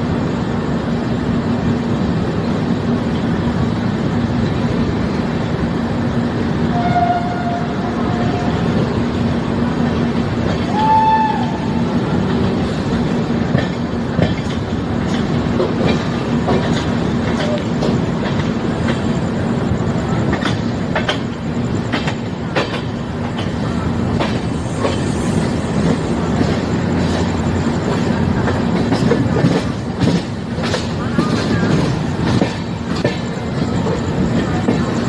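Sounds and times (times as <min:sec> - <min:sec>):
train rumbling: 0:00.0 - 0:35.0
train horn: 0:06.7 - 0:08.9, 0:10.6 - 0:11.9
rail-joint clicks: 0:06.7 - 0:35.0.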